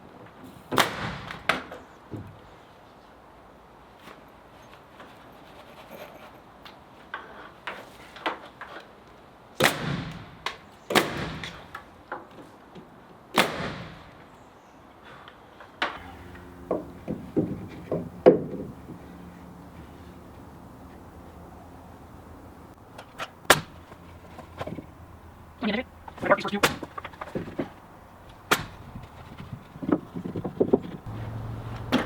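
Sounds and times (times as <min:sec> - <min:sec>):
knocks and bangs: 0:16.0 - 0:19.2
faint low hum: 0:16.0 - 0:32.0.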